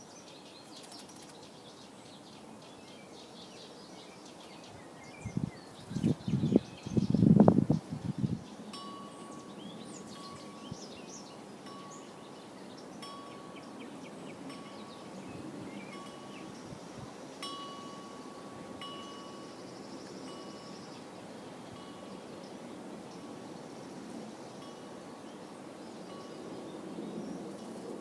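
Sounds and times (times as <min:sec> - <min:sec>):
small birds chirping: 0:00.0 - 0:28.0
wind chimes ringing: 0:08.6 - 0:23.5, 0:24.1 - 0:27.0.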